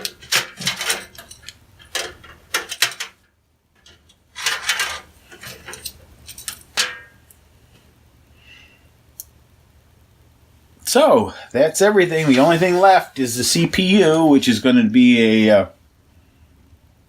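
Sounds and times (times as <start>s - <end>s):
sheet steel panels rattling: 0.0s - 7.2s.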